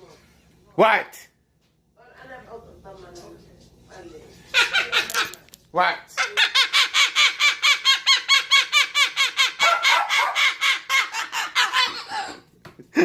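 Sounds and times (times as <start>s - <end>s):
parrot calling: 4.5s - 12.5s.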